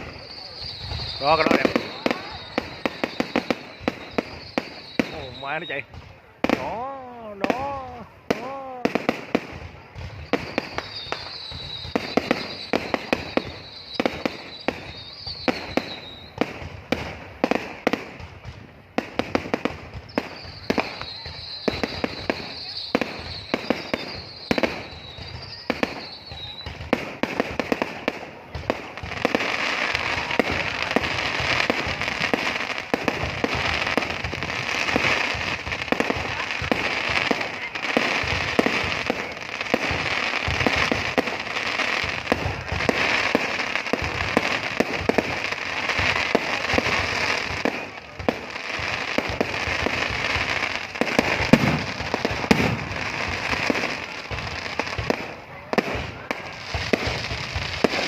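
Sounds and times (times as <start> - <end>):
high wavering whistle: 0.0 - 5.9, 10.1 - 16.4
fireworks crackling and banging: 0.0 - 58.0.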